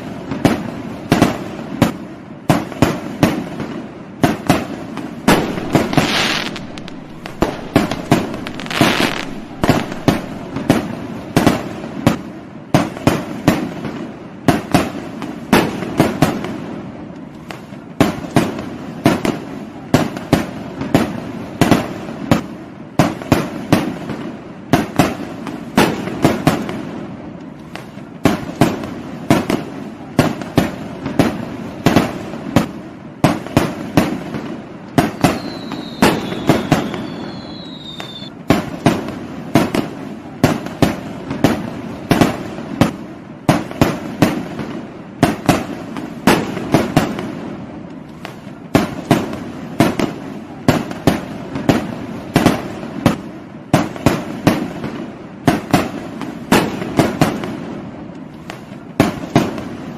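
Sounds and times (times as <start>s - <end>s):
firecrackers banging: 0.3s - 16.5s, 22.4s - 59.9s
firework whistle: 5.3s - 11.0s, 35.0s - 38.4s.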